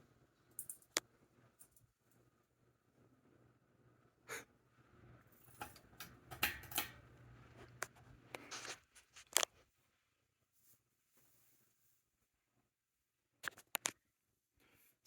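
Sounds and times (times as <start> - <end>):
low steady hum: 0.0 - 9.0.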